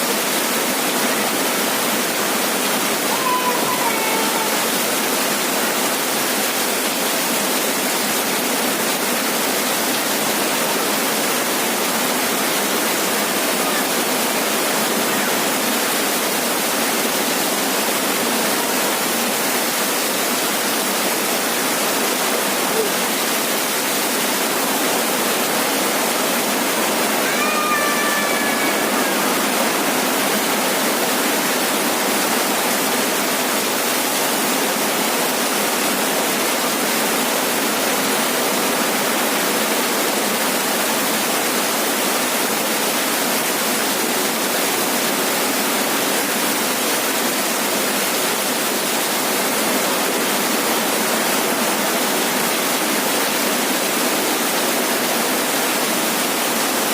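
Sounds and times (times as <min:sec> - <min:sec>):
heavy rain on a roof: 0:00.0 - 0:56.9
faint pitched call: 0:03.1 - 0:04.8, 0:27.0 - 0:30.1.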